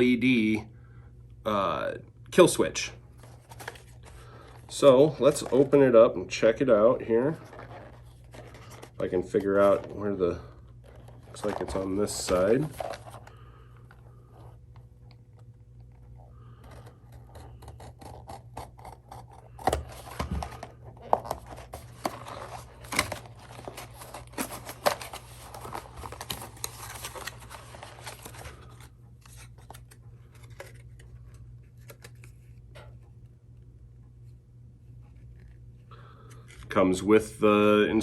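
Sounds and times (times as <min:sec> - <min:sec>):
steady low hum: 0:00.0 - 0:38.0
packaging being opened by hand: 0:07.2 - 0:32.7.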